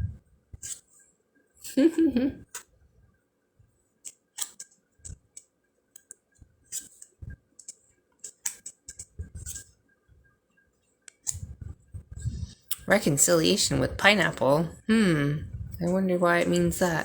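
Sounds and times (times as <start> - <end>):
cards clicking and snapping: 4.0 - 4.7.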